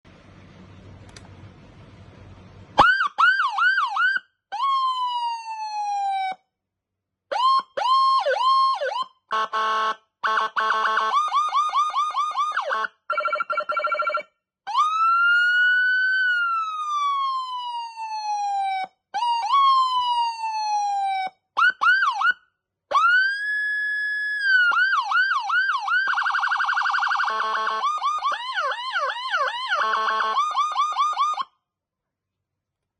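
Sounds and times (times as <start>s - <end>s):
electronic siren cycling tones: 10.2s - 31.5s.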